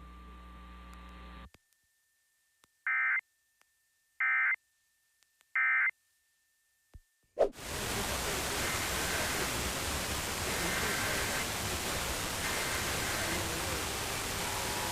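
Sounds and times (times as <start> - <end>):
radio static hiss: 7.6 - 14.9.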